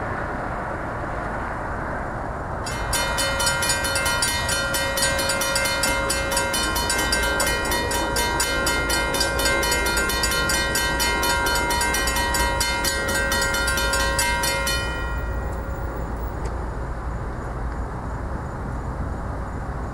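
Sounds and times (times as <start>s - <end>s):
freight train rumble: 0.0s - 19.9s
crossing bell ringing: 2.7s - 16.4s.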